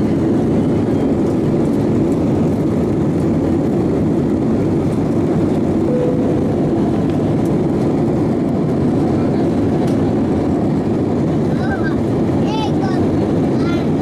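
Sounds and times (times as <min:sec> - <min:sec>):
jet engine roar in cabin: 0:00.0 - 0:14.0
short faint tone: 0:05.9 - 0:07.3.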